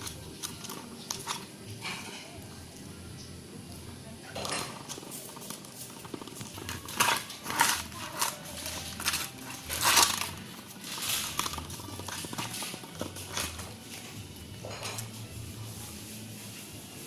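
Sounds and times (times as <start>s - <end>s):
dog scuffling with a ball: 4.4s - 17.0s.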